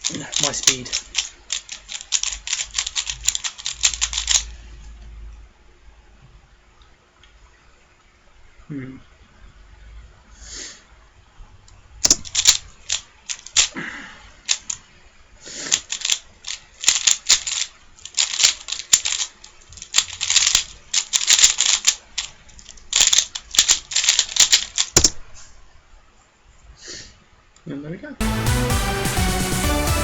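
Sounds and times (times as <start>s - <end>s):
plastic cube clicking: 0.0s - 4.5s, 12.1s - 13.8s, 14.4s - 14.8s, 15.6s - 25.2s.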